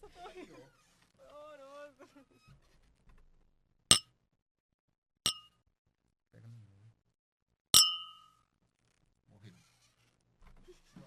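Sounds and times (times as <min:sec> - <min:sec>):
faint low voice murmurs: 0:06.4 - 0:07.0
glasses clinking: 0:07.8 - 0:08.3.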